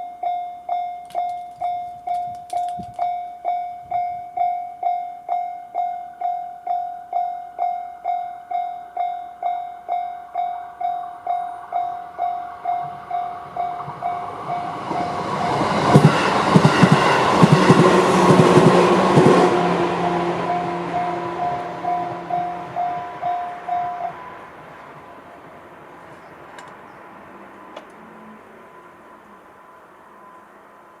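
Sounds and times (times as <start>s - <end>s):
level crossing bell ringing: 0.0s - 15.9s, 20.4s - 24.3s
electric train passing: 0.0s - 31.0s
train wheels clacking on rail joints: 1.0s - 3.2s, 12.1s - 24.0s.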